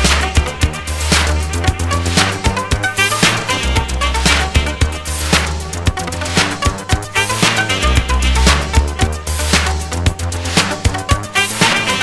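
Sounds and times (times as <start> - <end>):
funk dance music: 0.0 - 12.0
heavy bass line: 0.0 - 12.0
steady drum beat: 0.0 - 12.0.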